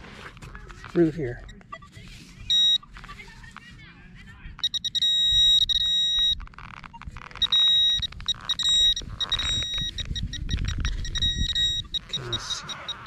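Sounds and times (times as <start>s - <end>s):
soil scraping and rustling: 0.0s - 1.4s
buzzy beeping of metal detector: 0.9s - 3.2s, 4.6s - 13.0s.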